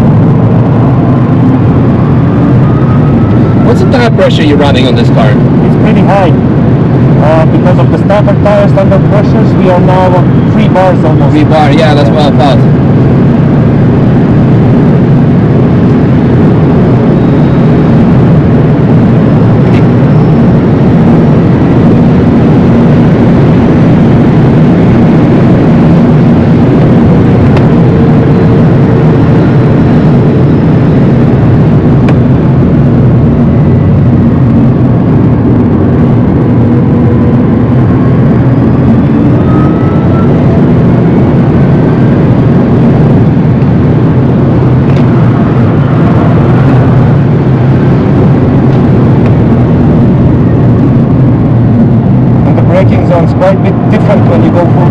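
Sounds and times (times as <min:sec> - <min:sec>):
tyre road and wind noise: 0:00.0 - 0:54.9
electric motor whine: 0:12.1 - 0:52.4.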